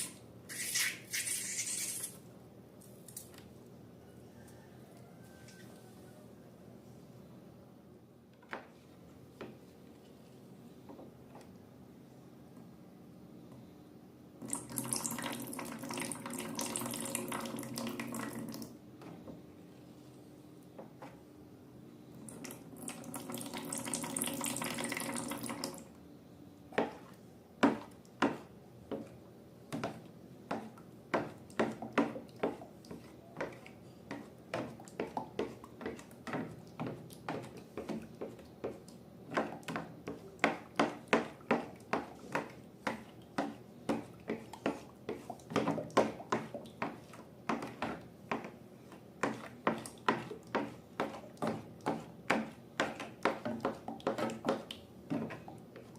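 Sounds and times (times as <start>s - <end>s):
liquid pouring: 22.5s - 25.9s.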